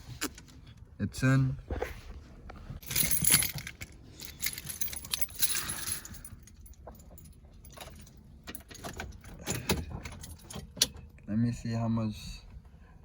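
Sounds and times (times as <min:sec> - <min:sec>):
small items jingling: 0:02.8 - 0:09.2.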